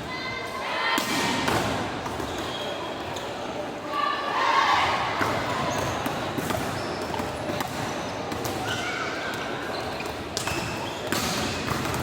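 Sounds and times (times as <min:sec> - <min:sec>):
players and spectators voices: 0:00.0 - 0:12.0
sneakers squeaking on court: 0:05.2 - 0:12.0.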